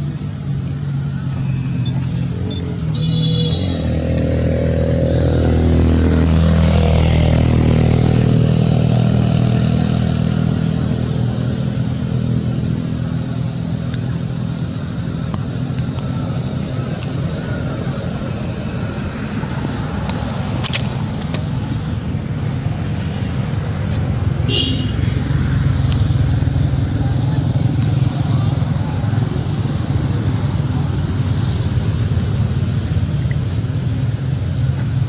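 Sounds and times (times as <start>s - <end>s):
steady background noise: 0.0s - 35.0s
vehicle engine passing by: 0.0s - 35.0s.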